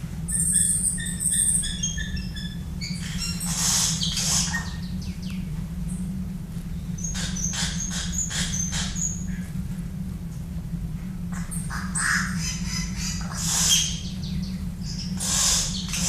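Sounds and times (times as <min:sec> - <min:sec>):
steady low hum: 0:00.0 - 0:16.0
harsh bird calls: 0:00.3 - 0:05.5, 0:06.9 - 0:09.3, 0:11.3 - 0:16.0
birds whistling: 0:00.3 - 0:06.0, 0:06.8 - 0:09.3, 0:11.4 - 0:16.0.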